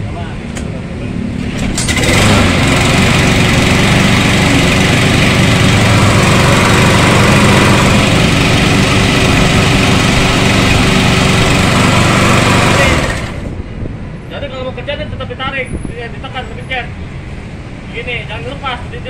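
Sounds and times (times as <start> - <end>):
lawn mower engine starting and running: 1.4 - 13.6.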